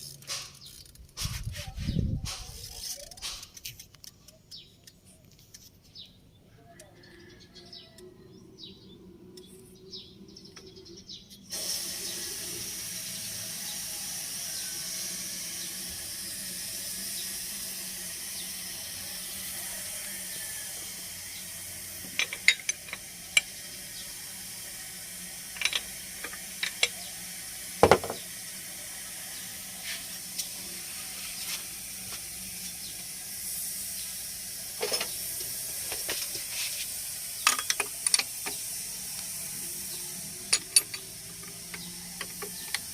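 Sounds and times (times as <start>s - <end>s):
steady hiss: 11.5s - 42.9s
hand tools clinking on metal: 22.1s - 23.5s, 40.5s - 42.9s.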